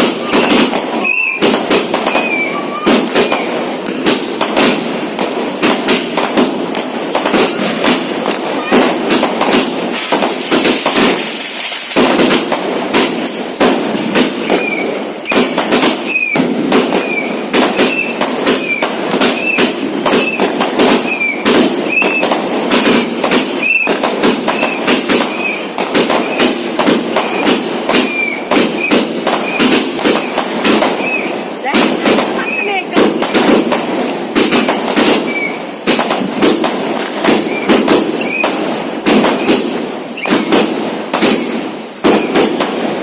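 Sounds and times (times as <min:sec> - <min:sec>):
firework whistles: 0:00.0 - 0:03.8, 0:14.2 - 0:31.5, 0:34.5 - 0:36.1, 0:37.3 - 0:40.7, 0:41.3 - 0:42.6
firecracker bangs: 0:00.0 - 0:43.0.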